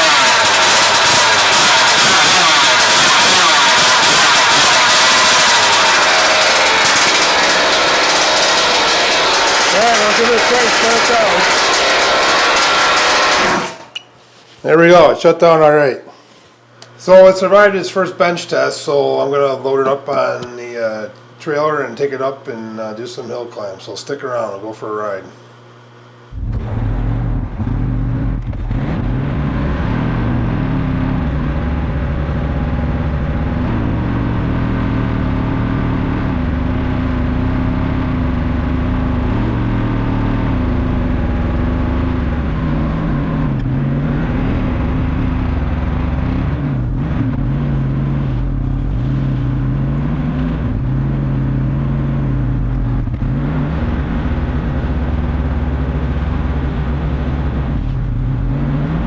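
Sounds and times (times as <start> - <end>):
vehicle engine running: 0.0 - 14.0, 26.3 - 59.0.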